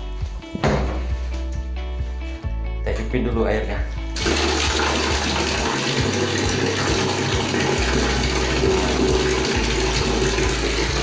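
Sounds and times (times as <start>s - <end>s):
water running hard: 4.2s - 11.0s.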